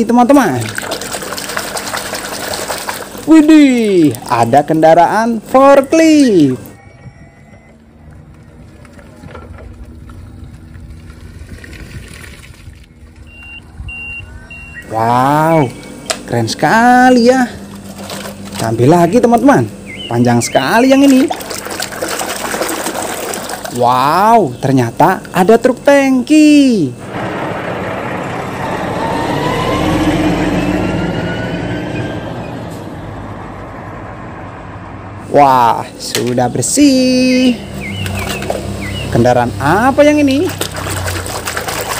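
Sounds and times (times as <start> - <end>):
water splashing: 0.0 - 5.0, 8.7 - 13.0, 17.3 - 24.1, 37.6 - 41.9
steady low hum: 0.0 - 41.9
faint rising tones: 26.9 - 35.4.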